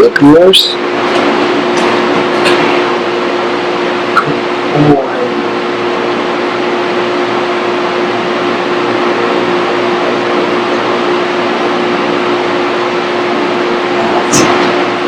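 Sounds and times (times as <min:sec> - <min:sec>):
constant hum tone: 0:00.0 - 0:15.0
fan whirring: 0:00.0 - 0:15.0.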